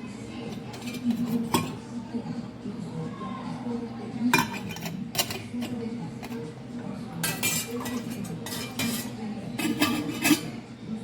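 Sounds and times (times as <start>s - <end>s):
metal kitchenware clinking: 0.5s - 1.8s, 4.3s - 6.4s, 7.2s - 10.6s.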